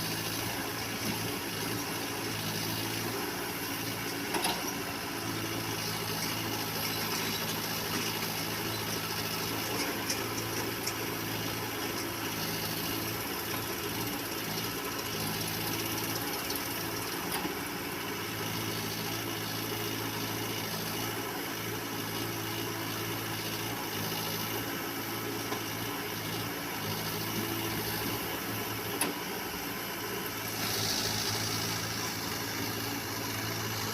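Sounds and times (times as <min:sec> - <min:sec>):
diesel engine running: 0:18.0 - 0:33.9.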